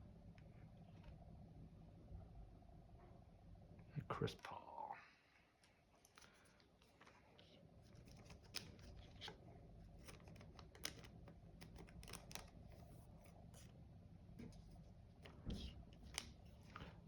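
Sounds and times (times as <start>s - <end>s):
low steady hum: 0.0s - 17.0s
trading cards clicking and rustling: 7.8s - 13.0s.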